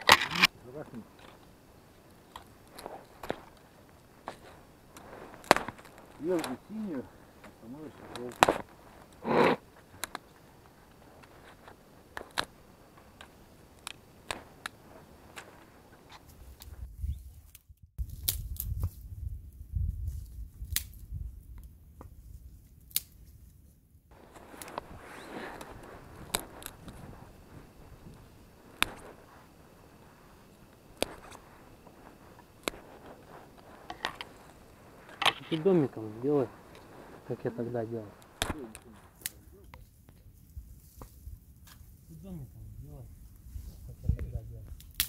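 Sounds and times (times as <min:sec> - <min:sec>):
dry twigs snapping: 0:00.0 - 0:16.8, 0:17.4 - 0:19.0, 0:20.1 - 0:21.7, 0:22.8 - 0:23.3, 0:24.1 - 0:39.9, 0:44.7 - 0:45.0
wood rustling: 0:00.0 - 0:16.8, 0:24.1 - 0:39.3.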